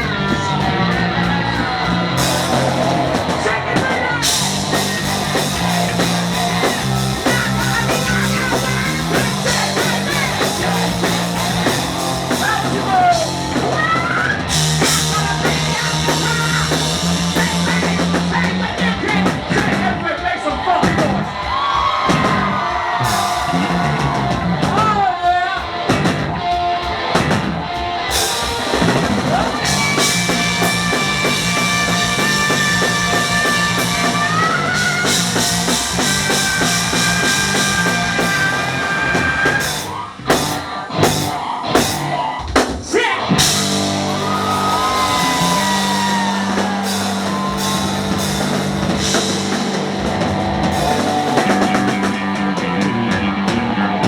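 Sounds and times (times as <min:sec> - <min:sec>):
hard rock band playing: 0:00.0 - 0:54.0
full-band accented hits: 0:02.1 - 0:13.8, 0:25.8 - 0:53.8
bent lead guitar notes: 0:27.1 - 0:42.1, 0:43.3 - 0:53.8.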